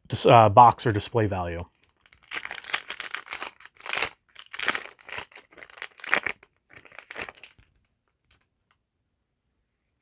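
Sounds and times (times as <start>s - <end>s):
card packaging crinkling and tearing: 1.7s - 8.4s.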